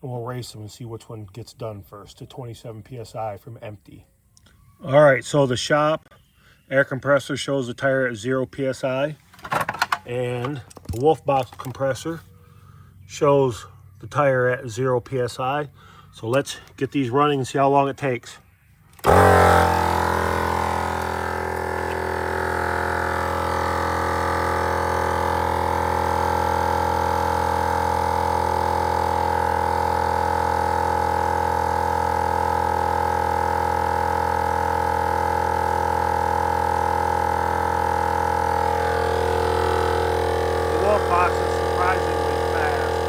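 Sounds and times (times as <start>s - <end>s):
air compressor droning: 18.8s - 43.0s.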